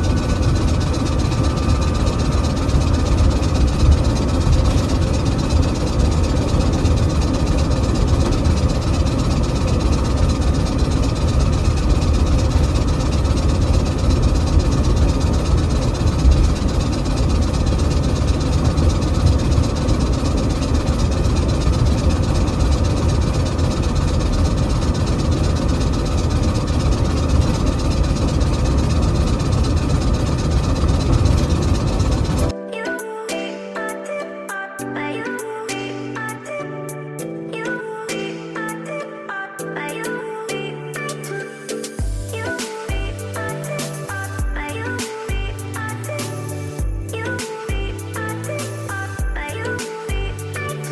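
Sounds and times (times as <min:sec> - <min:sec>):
car driving rumble: 0:00.0 - 0:32.5
faint steady tones: 0:00.0 - 0:32.5.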